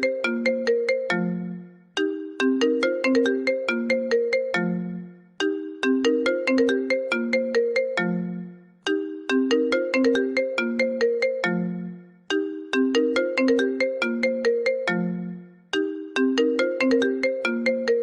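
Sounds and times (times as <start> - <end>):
phone ringtone melody: 0.0 - 18.0.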